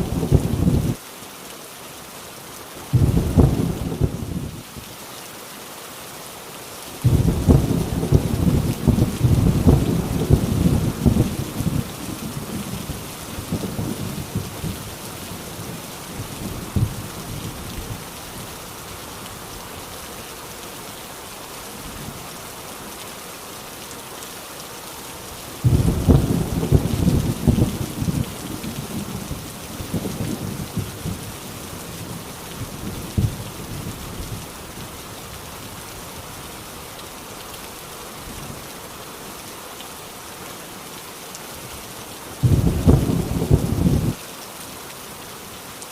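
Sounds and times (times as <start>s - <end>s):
heavy rain: 0.0s - 45.9s
rolling thunder: 3.0s - 4.6s, 7.0s - 14.9s, 25.6s - 31.3s, 42.4s - 44.2s.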